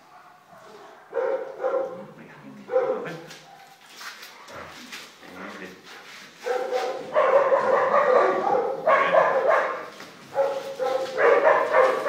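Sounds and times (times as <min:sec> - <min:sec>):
puppy crying: 0:07.0 - 0:09.8.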